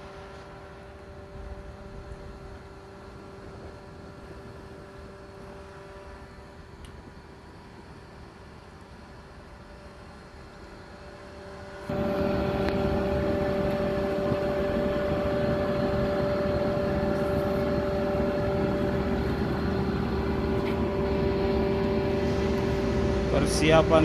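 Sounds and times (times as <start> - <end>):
ship engine humming: 10.1 - 24.0
steady machine tones: 11.8 - 24.0.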